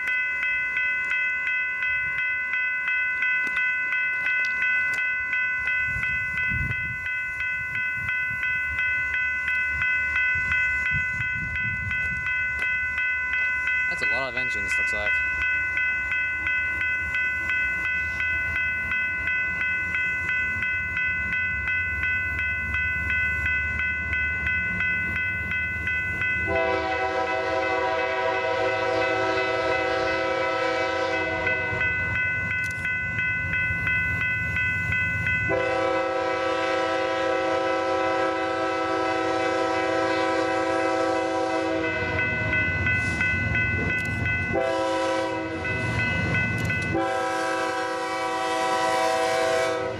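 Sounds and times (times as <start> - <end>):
high-pitched ringing: 0.0 - 49.9
train rumble: 0.0 - 49.9
train air horn blasts: 26.5 - 31.9, 35.5 - 42.3, 44.5 - 45.8, 46.9 - 49.9.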